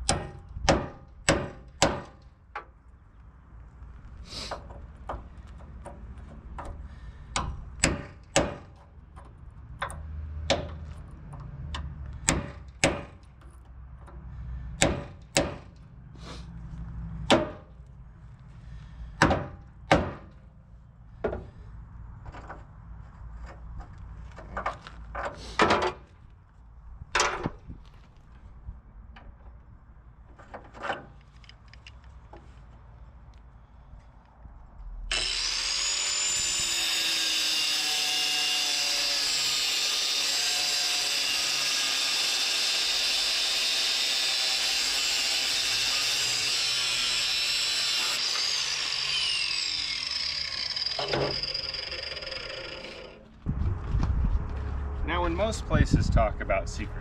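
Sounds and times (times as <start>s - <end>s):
sharp knocks and clunks on metal: 0.0s - 2.7s, 4.5s - 14.2s, 14.8s - 15.8s, 17.2s - 17.7s, 19.2s - 20.4s, 21.2s - 21.6s, 24.4s - 26.2s, 27.1s - 27.6s
steady low rumble: 53.3s - 57.0s.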